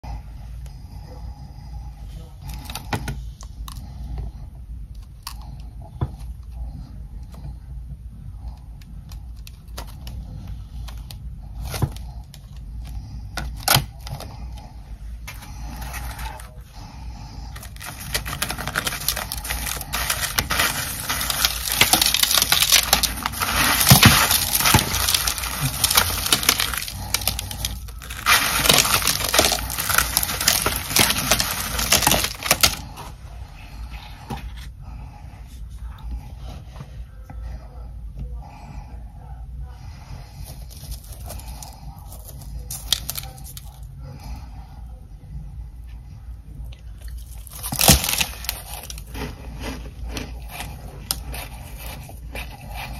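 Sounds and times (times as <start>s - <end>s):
frost crunching and crackling: 2.4s - 4.2s, 4.9s - 7.5s, 8.3s - 35.0s, 40.3s - 44.4s, 46.7s - 52.9s
ice chunks clinking: 17.7s - 32.8s.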